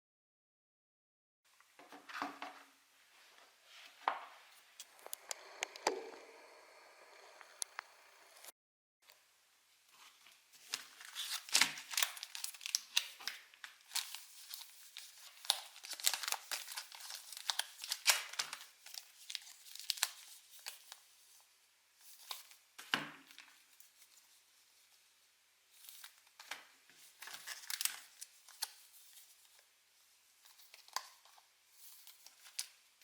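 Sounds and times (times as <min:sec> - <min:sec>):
wrappers being torn and crinkled: 0:10.7 - 0:20.9.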